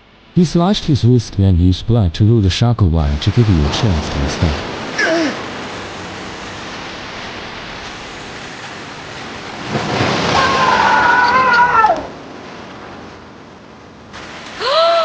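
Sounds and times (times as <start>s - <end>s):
steady rain-like hiss: 0.0s - 15.0s
cat meowing: 10.4s - 12.1s.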